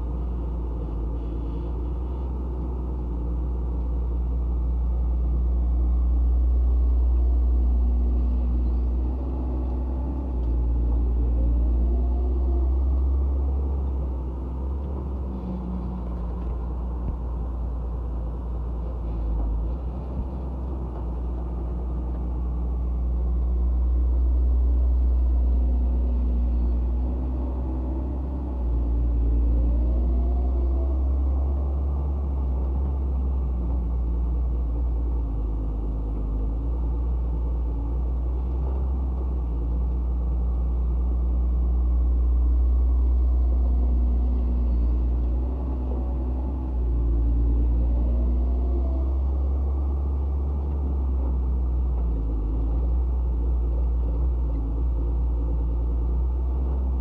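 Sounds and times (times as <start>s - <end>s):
diesel machinery rumbling: 0.0s - 57.0s.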